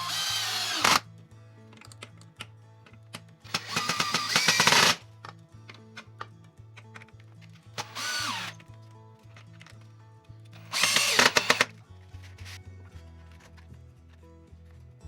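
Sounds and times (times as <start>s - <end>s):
power drill whirring: 0.0s - 1.0s, 3.5s - 5.0s, 7.8s - 8.6s, 10.6s - 11.7s.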